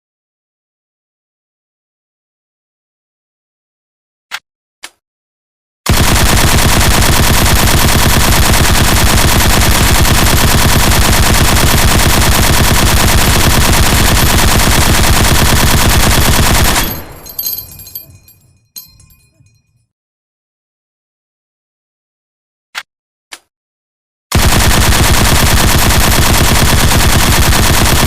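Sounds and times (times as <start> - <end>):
machine gun firing full-auto: 5.9 - 17.9, 24.3 - 28.0
metallic clinks: 16.6 - 19.8.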